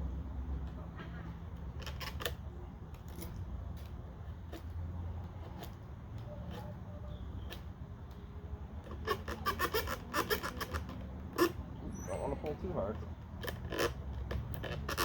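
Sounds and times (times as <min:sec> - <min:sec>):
knife scraping wood: 0:00.8 - 0:07.7, 0:08.8 - 0:11.6, 0:13.0 - 0:15.0.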